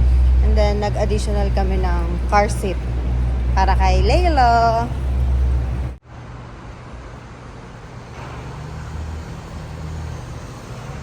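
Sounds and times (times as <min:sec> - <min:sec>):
loud low rumble: 0:00.0 - 0:06.0
vehicle background noise: 0:00.0 - 0:11.0.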